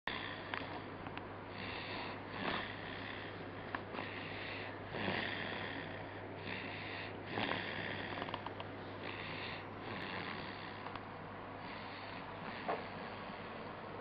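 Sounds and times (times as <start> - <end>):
steady low hum: 0.1 - 14.0
person snoring: 1.5 - 8.4, 9.0 - 10.9.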